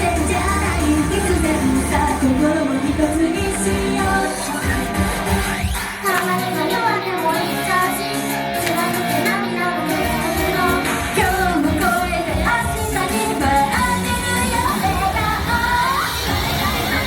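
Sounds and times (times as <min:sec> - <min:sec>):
female group singing pop song: 0:00.0 - 0:17.0
loud backing track: 0:00.0 - 0:17.0.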